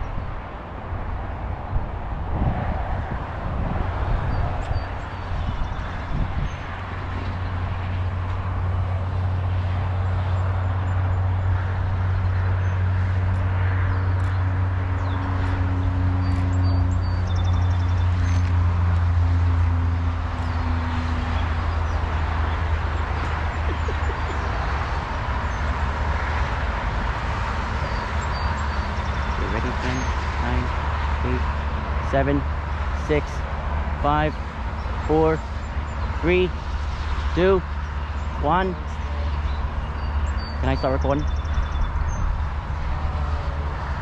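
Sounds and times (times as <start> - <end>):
train rumble and diesel drone: 29.3 - 36.8.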